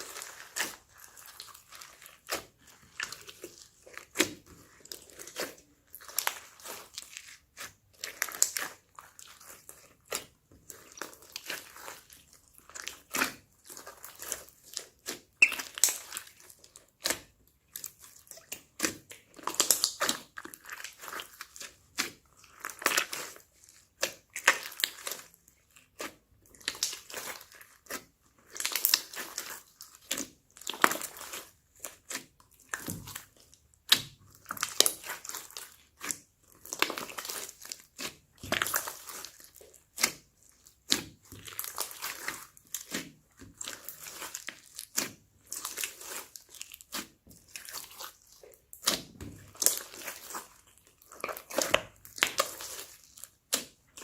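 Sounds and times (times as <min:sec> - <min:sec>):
slime clicks and crackles: 0:00.0 - 0:54.0
slime squishing: 0:00.0 - 0:54.0.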